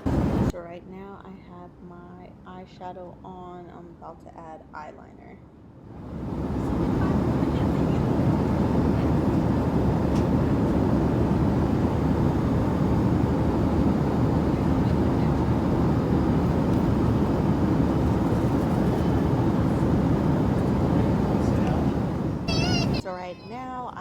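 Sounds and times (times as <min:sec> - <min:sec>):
airliner cabin rumble: 0:00.0 - 0:00.6, 0:05.9 - 0:23.0.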